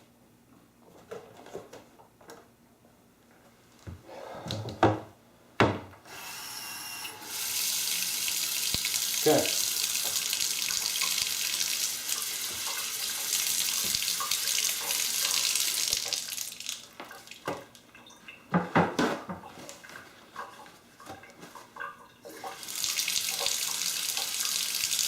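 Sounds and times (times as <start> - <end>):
water running into sink: 7.2 - 18.9, 19.7 - 25.0.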